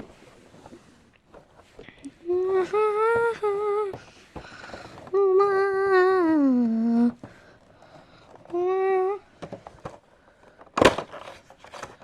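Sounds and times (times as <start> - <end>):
person humming: 2.0 - 4.1, 5.1 - 7.2, 8.5 - 9.3.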